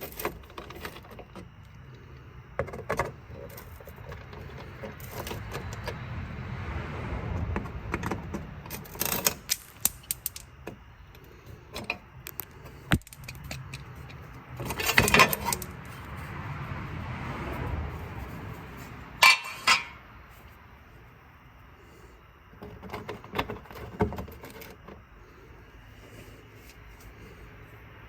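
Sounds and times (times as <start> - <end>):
metal tools clinking: 13.0 - 16.1, 18.8 - 20.0
sharp metal clanks: 19.2 - 20.0.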